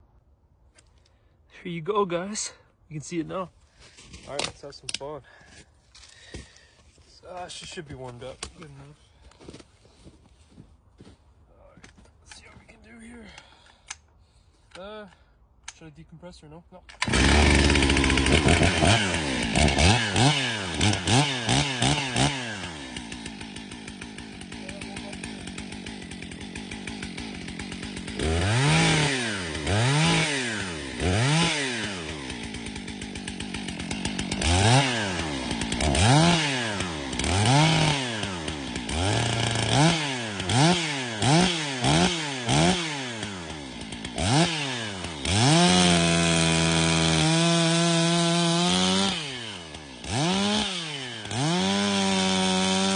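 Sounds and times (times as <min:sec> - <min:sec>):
chainsaw revving: 0:17.0 - 0:52.9.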